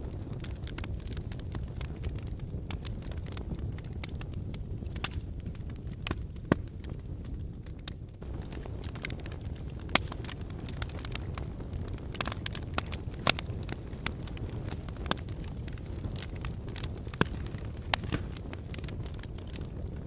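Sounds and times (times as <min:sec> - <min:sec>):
fire crackling and popping: 0:00.0 - 0:20.0
low rumble of flames: 0:00.0 - 0:20.0.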